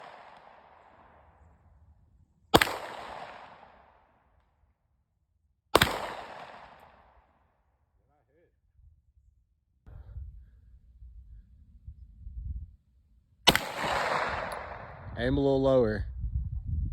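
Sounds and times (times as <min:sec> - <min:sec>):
gunshots with long echo: 0:00.0 - 0:04.4, 0:05.7 - 0:07.6, 0:13.5 - 0:15.3.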